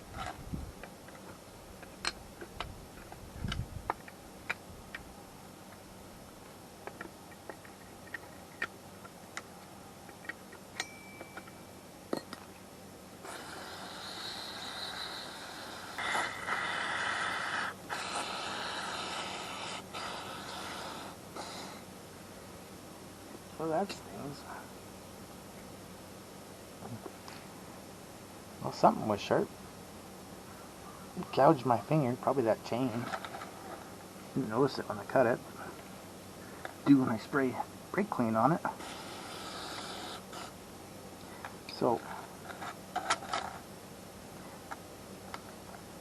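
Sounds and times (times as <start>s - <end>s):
hand tools clicking and tapping: 6.8s - 12.5s
aerosol can hissing: 13.2s - 21.8s, 38.8s - 40.5s.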